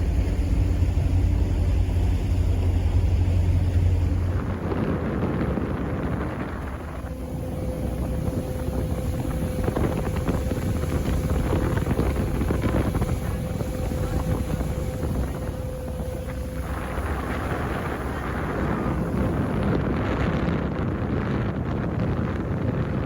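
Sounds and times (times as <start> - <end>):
wind buffeting microphone: 0.0 - 23.0.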